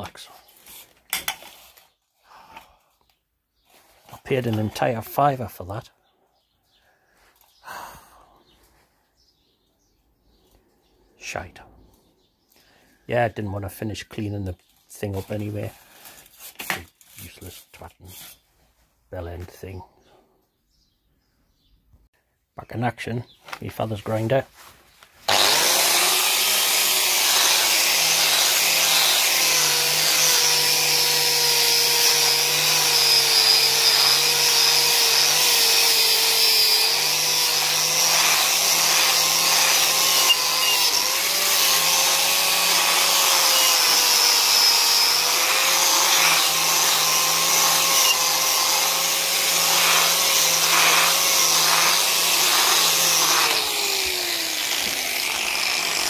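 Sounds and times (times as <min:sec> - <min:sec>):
electric grinder whining: 0:25.3 - 0:56.0.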